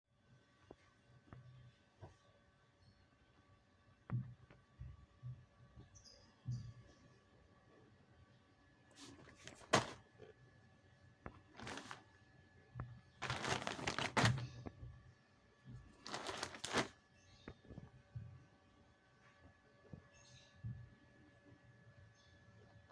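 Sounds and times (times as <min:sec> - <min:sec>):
packaging rustling and crinkling: 0:09.0 - 0:10.0, 0:11.3 - 0:12.1, 0:13.2 - 0:14.6, 0:15.9 - 0:17.0.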